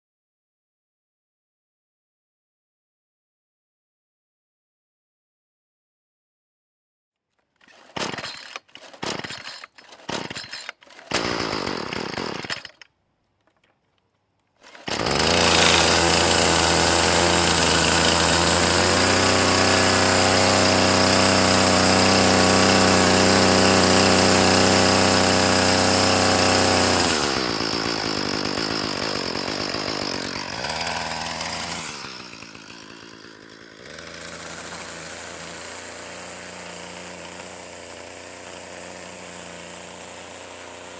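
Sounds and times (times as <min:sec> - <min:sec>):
string trimmer engine: 0:07.6 - 0:12.9, 0:14.6 - 0:40.9.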